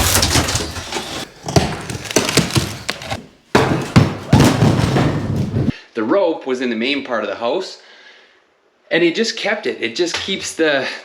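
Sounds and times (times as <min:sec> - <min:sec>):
wooden knocks and thumps: 0:00.0 - 0:05.7.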